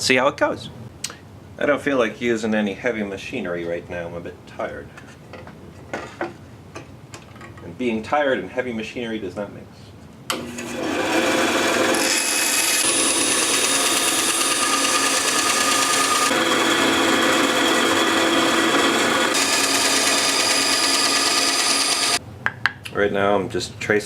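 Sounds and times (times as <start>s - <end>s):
power tool cutting wood: 10.3s - 22.2s.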